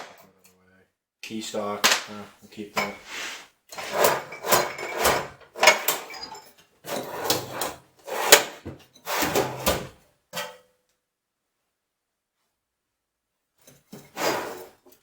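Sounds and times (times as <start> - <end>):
drawer sliding: 2.9 - 10.0, 14.0 - 14.8
metal parts clattering: 3.8 - 7.1.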